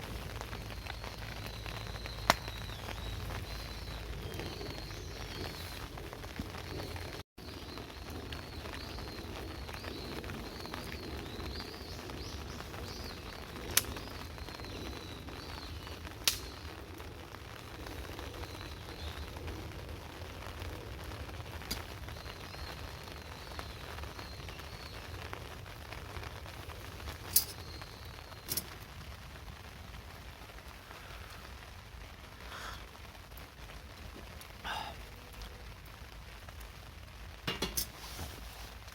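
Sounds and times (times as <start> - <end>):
burning wood popping: 0.0 - 38.9
campfire crackling: 0.0 - 38.9
rain: 0.0 - 38.9
small bird chirping: 0.8 - 5.9.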